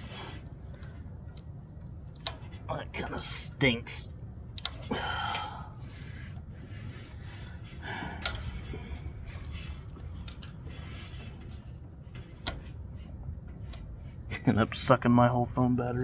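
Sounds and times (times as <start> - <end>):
small clicks: 0.7 - 2.6, 4.5 - 4.9.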